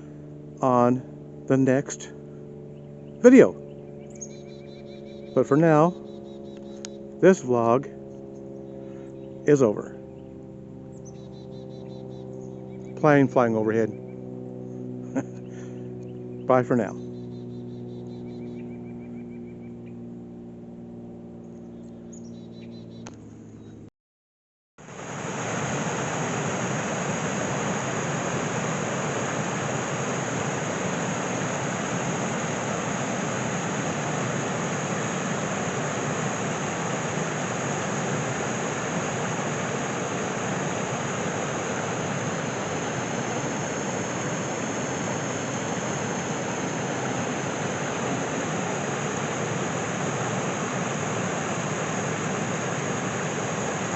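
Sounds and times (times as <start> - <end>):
faint hum: 0.0 - 23.9, 24.8 - 53.9
waterfall rushing: 24.9 - 53.9.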